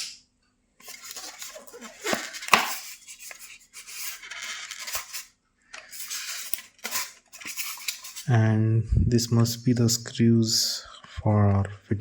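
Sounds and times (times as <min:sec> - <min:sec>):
plastic packaging crinkling: 0:00.8 - 0:08.2.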